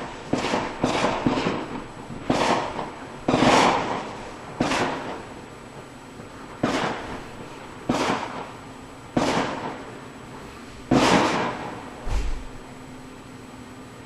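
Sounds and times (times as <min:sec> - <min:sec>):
fireworks bangs: 0:00.0 - 0:05.5, 0:06.2 - 0:10.0, 0:10.8 - 0:12.7.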